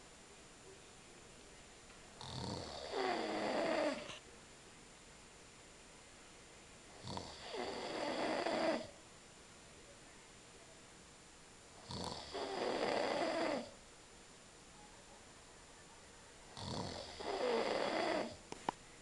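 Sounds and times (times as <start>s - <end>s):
man snoring: 2.2s - 4.1s, 7.0s - 8.9s, 11.8s - 13.7s, 16.6s - 18.4s.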